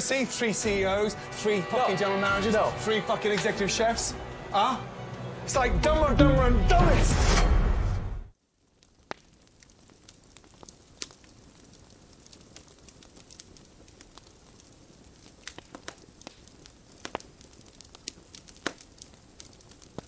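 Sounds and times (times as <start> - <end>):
crackling clicks and pops: 8.6 - 20.0.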